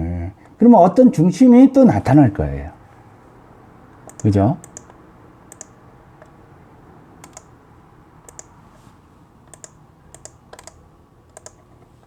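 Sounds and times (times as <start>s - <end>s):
faint room hum: 0.0s - 12.0s
computer mouse clicking: 3.9s - 6.4s, 7.2s - 7.5s, 8.2s - 8.6s, 9.5s - 12.0s.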